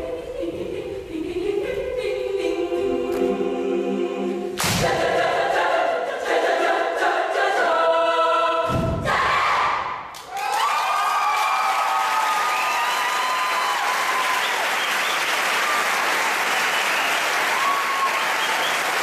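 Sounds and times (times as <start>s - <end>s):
choir singing a cappella: 0.0s - 10.1s.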